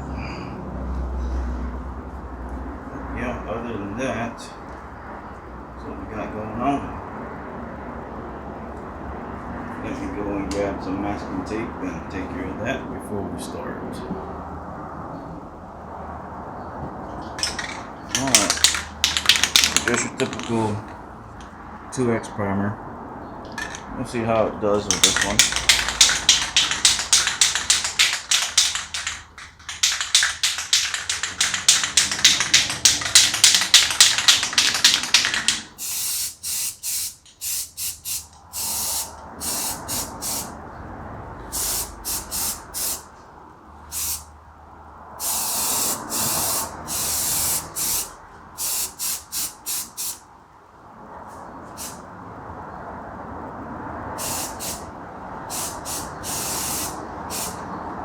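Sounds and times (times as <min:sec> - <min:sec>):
aerosol can spraying: 0:25.0 - 0:40.5, 0:41.5 - 0:43.0, 0:43.9 - 0:44.2, 0:45.2 - 0:50.2, 0:51.8 - 0:52.0, 0:54.2 - 0:54.9, 0:55.5 - 0:57.6.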